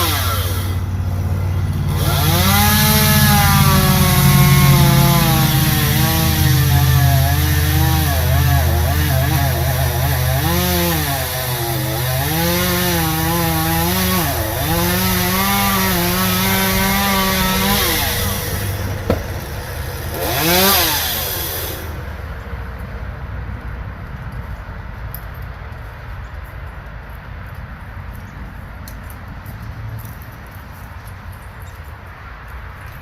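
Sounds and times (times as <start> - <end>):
chainsaw cutting wood: 0.0 - 22.3.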